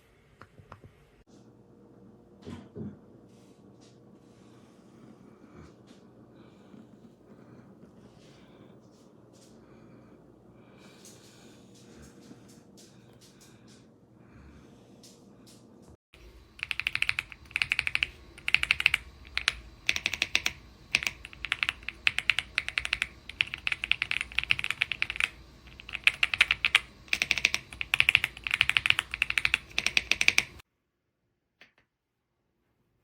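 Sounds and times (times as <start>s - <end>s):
mechanical keyboard typing: 16.5s - 30.6s.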